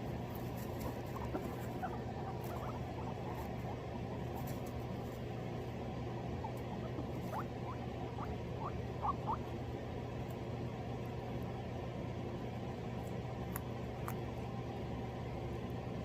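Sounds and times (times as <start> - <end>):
guinea pigs squeaking: 0.0 - 10.4
low hum: 0.0 - 16.0.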